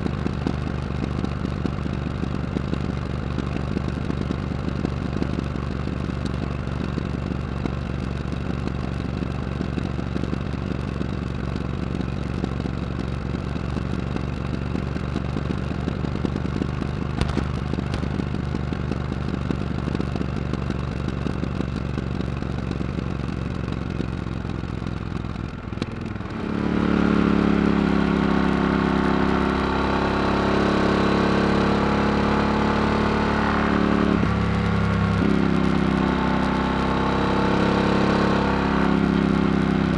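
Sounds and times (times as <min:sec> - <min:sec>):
motorcycle engine revving: 0:16.5 - 0:18.3, 0:26.0 - 0:39.9.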